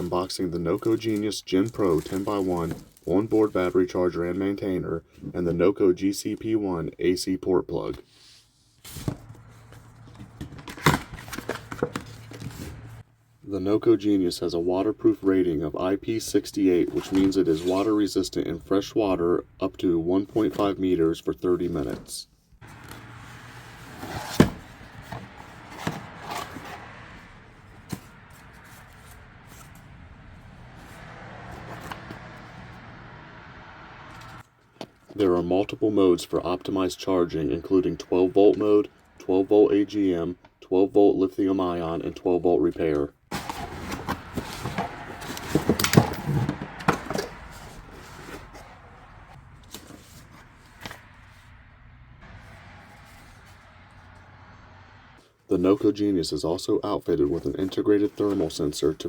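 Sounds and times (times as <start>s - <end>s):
items rubbing: 0.0s - 4.0s, 8.8s - 13.0s, 16.8s - 18.1s, 22.6s - 32.4s, 43.3s - 51.5s
packaging clicks and rustles: 0.7s - 3.6s, 9.4s - 12.9s, 22.6s - 26.8s, 43.3s - 48.7s.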